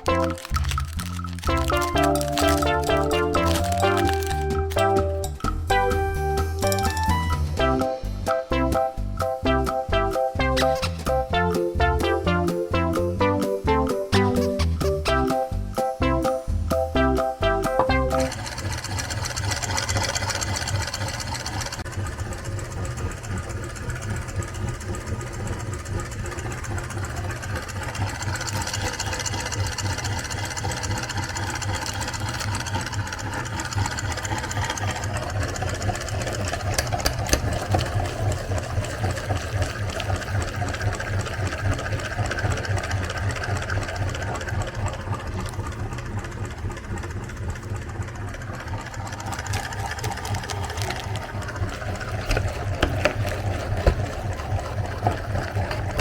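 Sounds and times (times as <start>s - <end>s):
electric grinder motor running: 0.0s - 5.6s, 18.2s - 56.0s.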